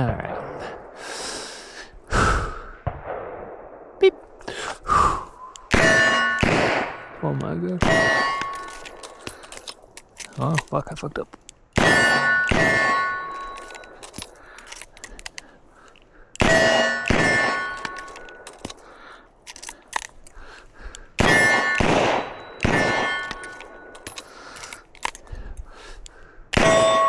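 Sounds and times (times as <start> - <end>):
reloading clicks: 4.2 - 27.0
metallic ringing: 5.5 - 7.2, 7.8 - 10.7, 11.8 - 15.4, 16.4 - 18.9, 21.0 - 25.2, 26.6 - 27.0.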